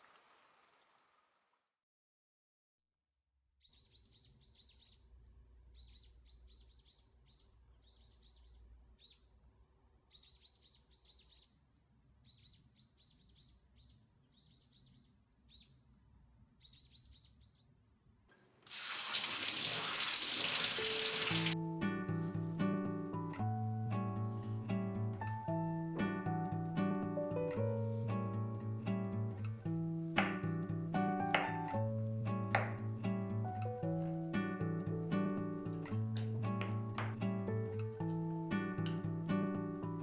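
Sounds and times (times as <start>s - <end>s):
songbird chirping: 5.7s - 9.3s, 10.1s - 11.6s, 12.2s - 15.9s, 16.6s - 17.8s
loud steady hiss: 18.7s - 21.6s.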